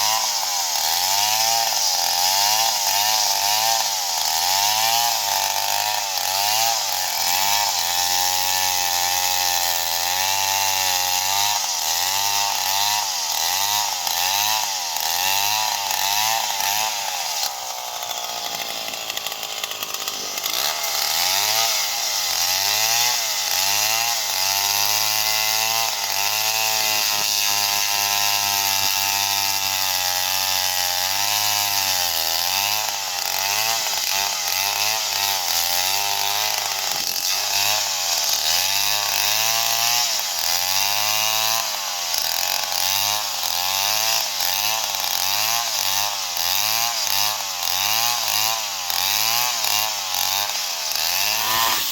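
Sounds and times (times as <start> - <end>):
chainsaw cutting wood: 0.0 - 51.9.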